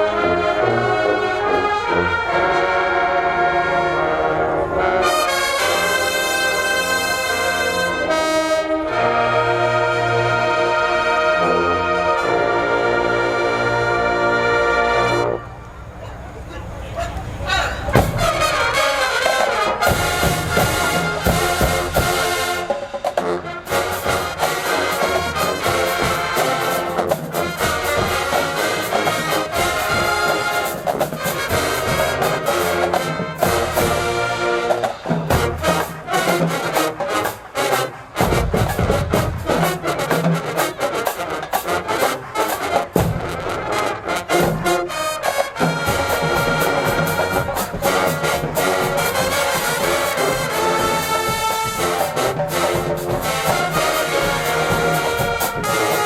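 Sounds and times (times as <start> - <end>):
marching band brass music: 0.0 - 56.0
drum strokes: 17.5 - 56.0.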